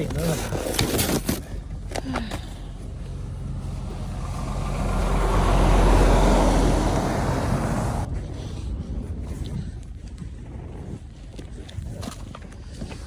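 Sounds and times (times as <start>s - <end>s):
road vehicle passing: 1.7s - 8.8s.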